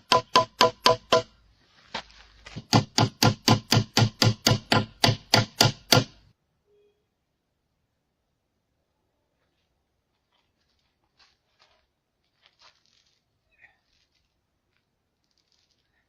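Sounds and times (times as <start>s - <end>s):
hand tool striking wood: 0.0s - 1.4s, 2.5s - 6.2s.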